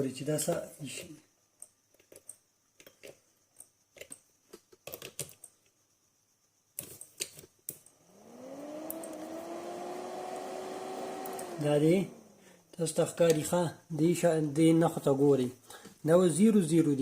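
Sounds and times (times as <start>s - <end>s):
battery charger humming: 7.8s - 13.4s.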